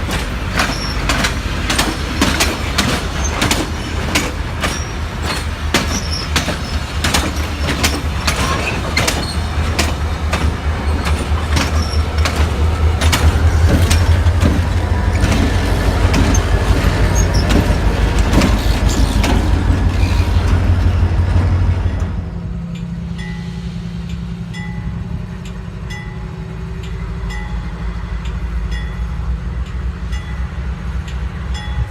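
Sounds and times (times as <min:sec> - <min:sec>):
wheels clicking over rail joints: 0:00.0 - 0:22.9
diesel train rumble: 0:00.0 - 0:31.9.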